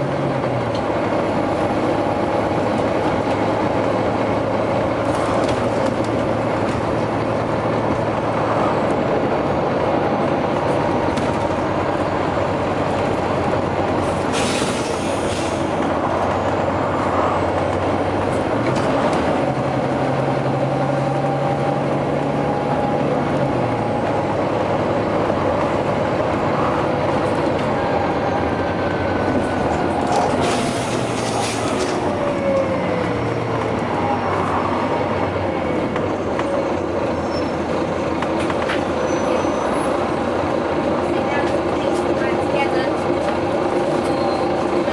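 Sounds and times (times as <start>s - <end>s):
bus diesel engine labouring: 0.0s - 44.9s
air brakes hissing: 14.2s - 15.8s.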